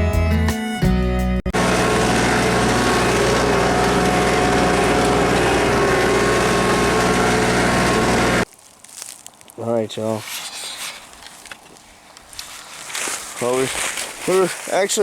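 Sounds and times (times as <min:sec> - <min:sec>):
atv engine running: 0:01.5 - 0:08.4.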